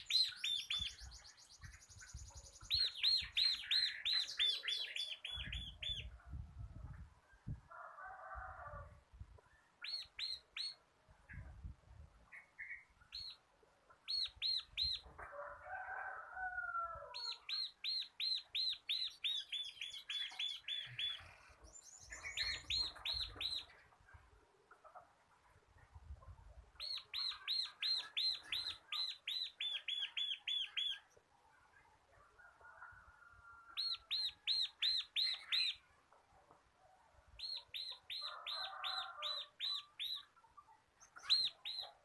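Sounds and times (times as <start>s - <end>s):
bird singing rapid chirps: 0.0s - 6.1s.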